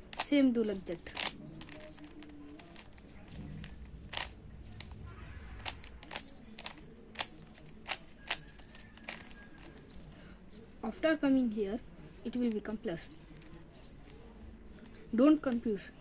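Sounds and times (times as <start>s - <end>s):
puzzle cube plastic clicks: 0.1s - 4.9s, 5.6s - 10.1s.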